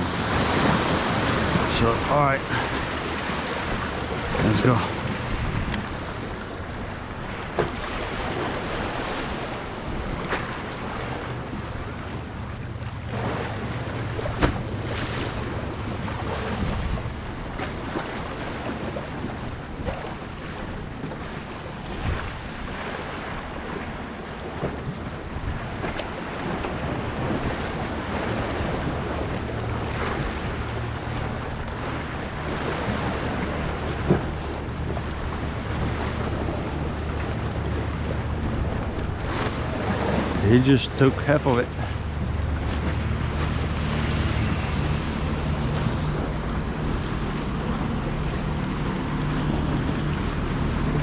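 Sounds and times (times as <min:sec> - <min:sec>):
wind buffeting microphone: 0:00.0 - 0:40.7
waves and surf: 0:00.0 - 0:51.0.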